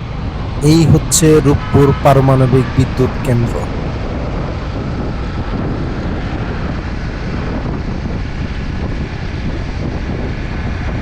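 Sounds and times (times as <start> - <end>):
wind buffeting microphone: 3.5 - 11.0.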